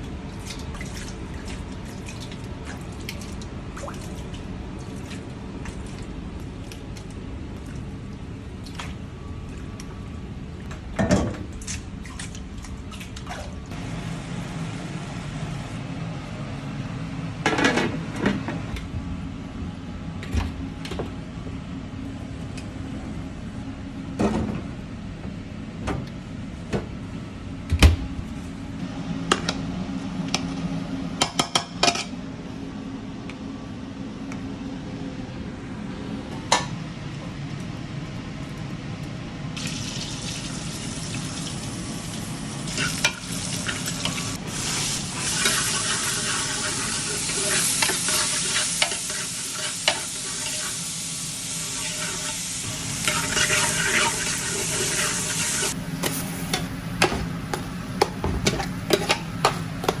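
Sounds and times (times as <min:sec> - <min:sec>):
food sizzling in a pan: 0:39.6 - 1:00.0
utensils knocking and clinking: 0:56.0 - 1:00.0.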